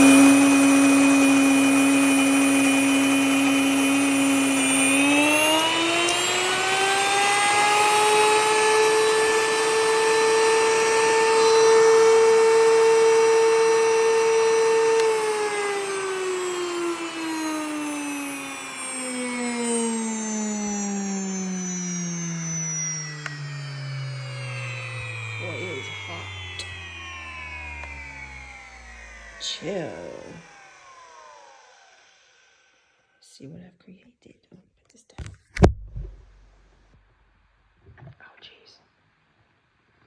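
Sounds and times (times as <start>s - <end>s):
electric grain mill motor whine: 0.0s - 33.2s.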